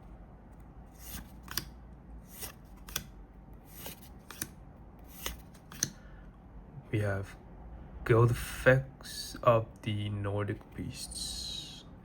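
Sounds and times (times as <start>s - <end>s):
cards sliding papery swish: 0.9s - 3.1s, 3.7s - 5.9s.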